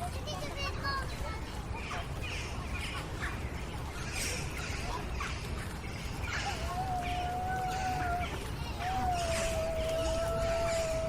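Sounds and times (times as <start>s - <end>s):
distant children: 0.0s - 11.0s
birds chirping: 0.3s - 11.0s
long high bird call: 6.4s - 11.0s.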